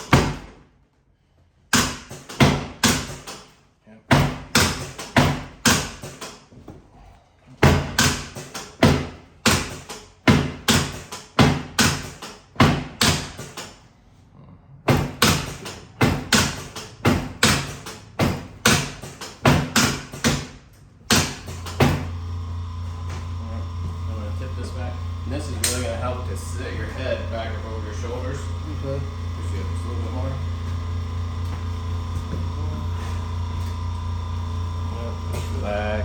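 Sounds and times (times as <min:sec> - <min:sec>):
electric motor hum: 0:21.2 - 0:36.0.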